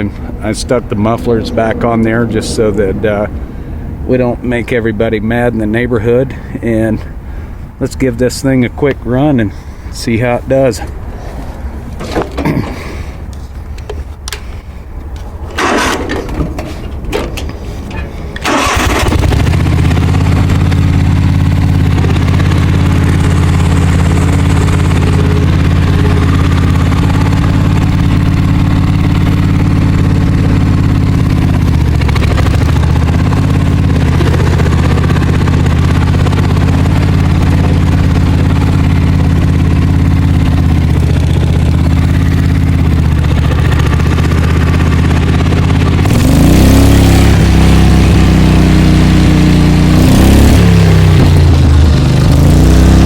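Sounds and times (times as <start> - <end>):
garden tractor engine running: 13.6 - 53.0.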